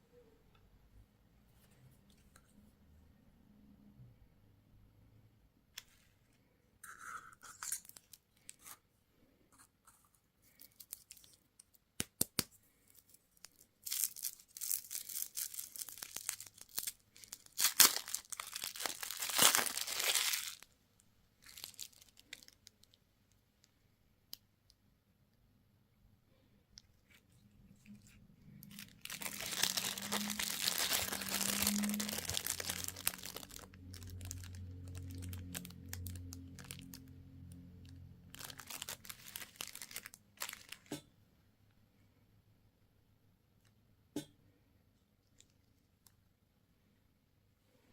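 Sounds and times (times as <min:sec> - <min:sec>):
candy packaging tearing and crinkling: 0:06.8 - 0:08.8, 0:10.5 - 0:20.7, 0:21.4 - 0:23.0, 0:27.1 - 0:40.9.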